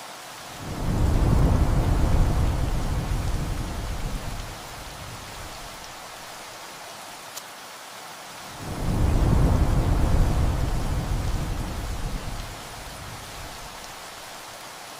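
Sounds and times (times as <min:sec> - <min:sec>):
heavy rain on a tin roof: 0:00.0 - 0:14.9
rolling thunder: 0:00.6 - 0:06.0, 0:08.6 - 0:14.1.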